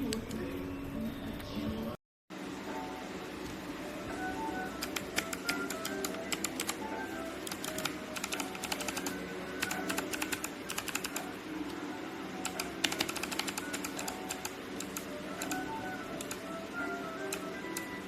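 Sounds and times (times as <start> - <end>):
background music with simple melody: 0.0 - 18.0
mechanical keyboard keys clicking: 4.8 - 6.8, 7.4 - 11.3, 12.4 - 16.6, 17.2 - 18.0.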